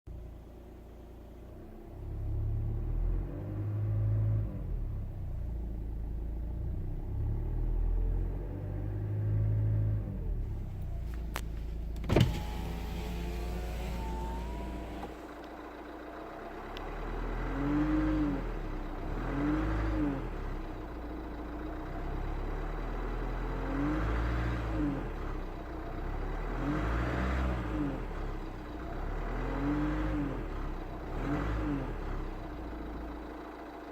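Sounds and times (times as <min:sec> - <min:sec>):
diesel engine revving: 0:01.9 - 0:33.9.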